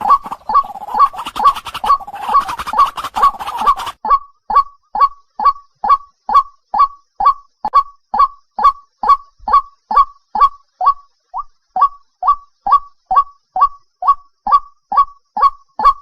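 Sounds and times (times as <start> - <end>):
waterhen calling: 0.0 - 4.0.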